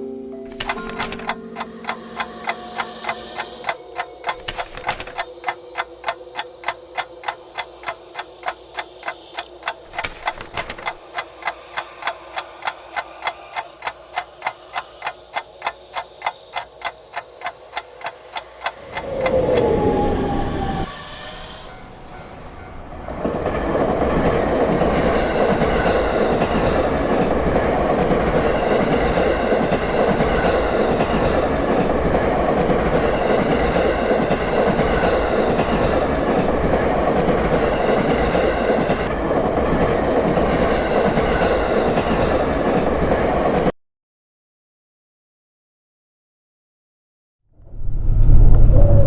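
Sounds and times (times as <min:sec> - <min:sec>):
vehicle rumble: 0:47.6 - 0:49.0.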